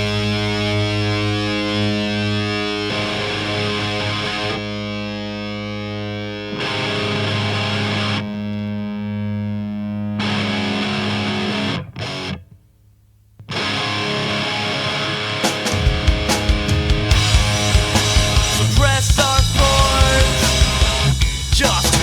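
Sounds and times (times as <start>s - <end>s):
drums: 0.0s - 1.6s, 14.5s - 22.0s
distorted electric guitar chords: 0.0s - 12.5s, 13.4s - 22.0s.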